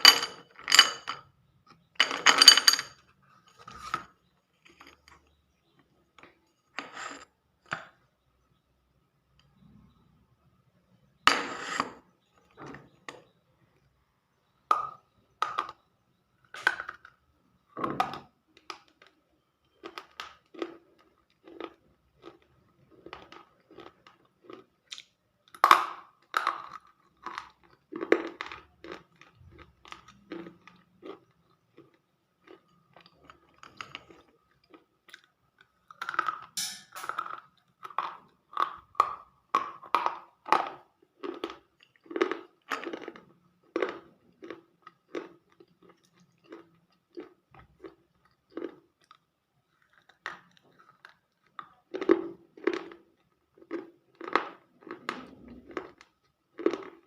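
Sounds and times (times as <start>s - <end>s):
crunchy chewing: 18.8s - 25.6s, 26.2s - 57.0s.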